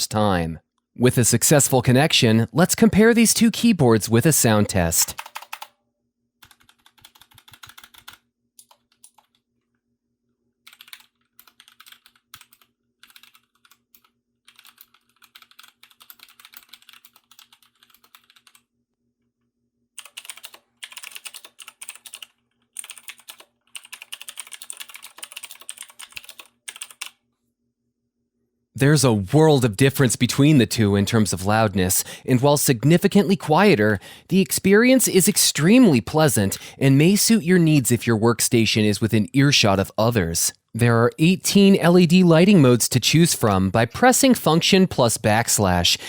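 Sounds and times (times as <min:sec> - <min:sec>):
loud mechanical keyboard typing: 0:05.0 - 0:05.7, 0:06.4 - 0:09.4, 0:10.7 - 0:18.6, 0:20.0 - 0:27.2
quiet mechanical keyboard typing: 0:05.0 - 0:05.7, 0:06.4 - 0:09.4, 0:10.6 - 0:18.7, 0:20.0 - 0:27.2.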